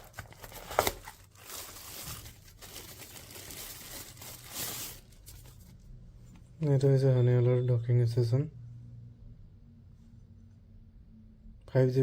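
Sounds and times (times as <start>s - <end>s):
packaging crinkling and rustling: 0.0s - 5.8s.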